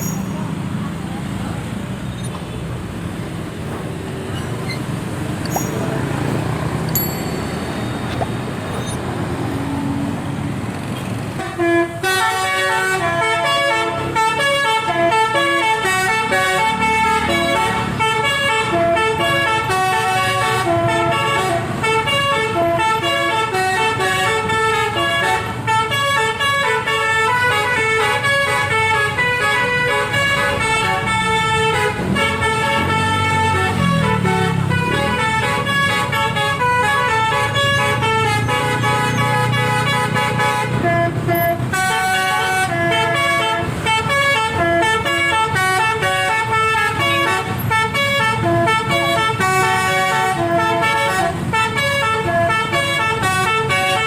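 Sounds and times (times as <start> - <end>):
bus air horn playing tune: 0.0 - 0.8, 2.5 - 9.5, 11.3 - 54.0
engine noise: 0.0 - 11.6
traffic noise: 0.0 - 54.0.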